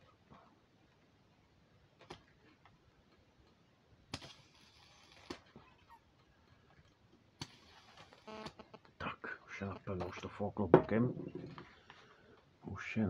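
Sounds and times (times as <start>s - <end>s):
gas hissing: 7.4s - 8.6s.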